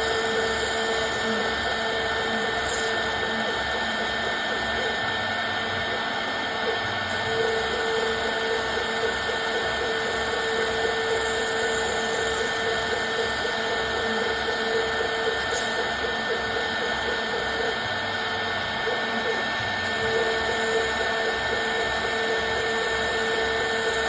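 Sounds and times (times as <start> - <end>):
machine whining with low pulsing: 0.0 - 24.0.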